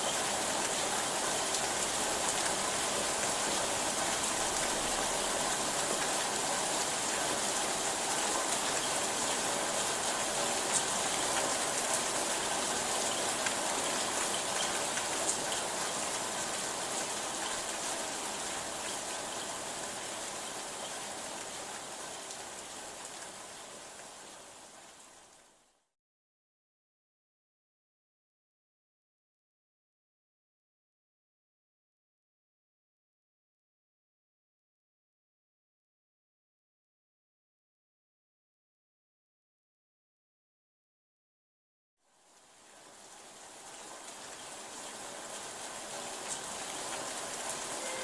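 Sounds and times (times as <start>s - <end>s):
steady rainfall: 0.0s - 25.9s, 42.1s - 48.0s.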